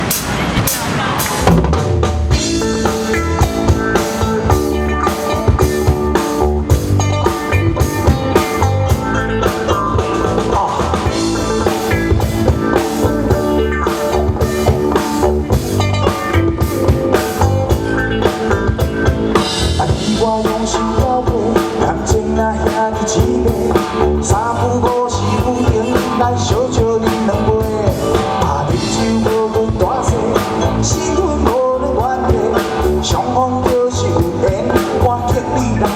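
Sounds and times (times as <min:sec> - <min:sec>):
drum kit beat: 0:00.0 - 0:35.9
rock band playing: 0:00.0 - 0:35.9.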